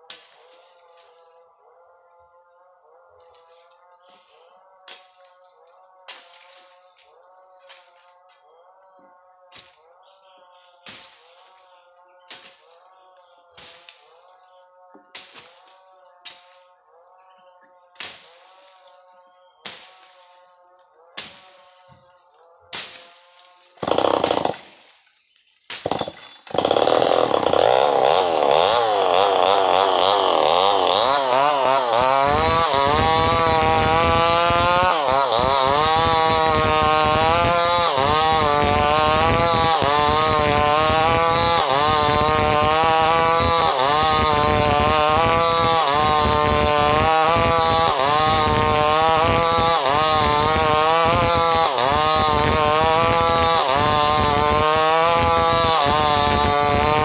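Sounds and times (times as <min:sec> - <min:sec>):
chainsaw cutting log: 0:00.0 - 0:01.5, 0:18.0 - 0:20.6, 0:21.2 - 0:22.1, 0:22.7 - 0:57.0.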